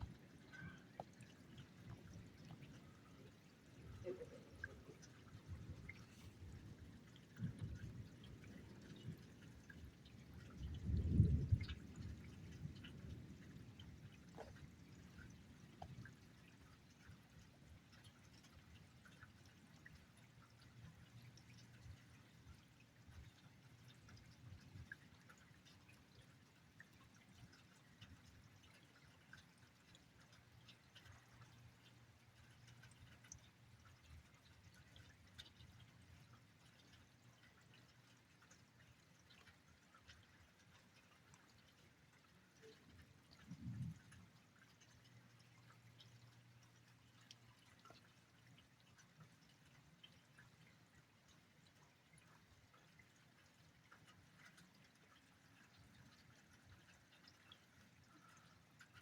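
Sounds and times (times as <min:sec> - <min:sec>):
rain dripping and pattering: 0:00.0 - 0:59.0
low rumble of thunder: 0:10.5 - 0:13.8.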